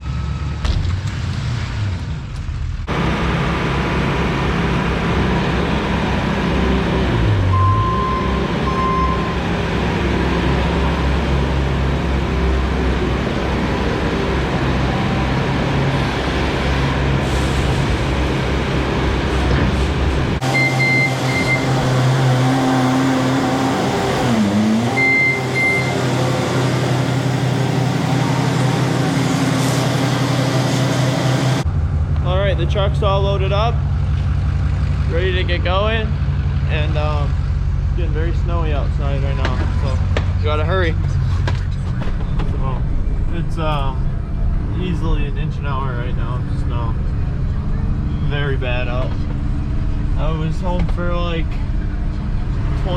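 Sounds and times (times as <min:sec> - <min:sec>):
truck engine running: 0:00.0 - 0:52.9
short high beeps: 0:20.4 - 0:21.8, 0:24.9 - 0:26.0.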